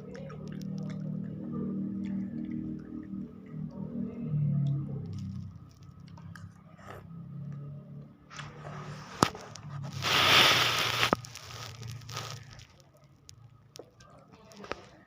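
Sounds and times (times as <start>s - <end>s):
loud slurp of noodles: 8.4s - 12.5s.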